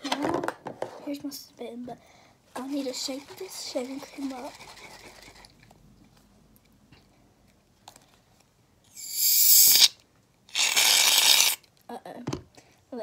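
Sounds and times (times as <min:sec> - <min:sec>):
shaving cream can shaken: 0:02.6 - 0:05.6.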